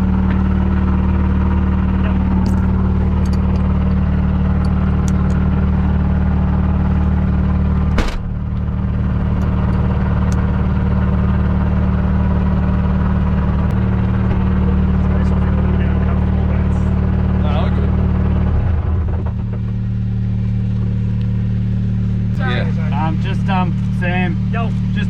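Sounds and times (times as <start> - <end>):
car engine idling: 0.0 - 25.0
sharp knock: 8.0 - 8.3.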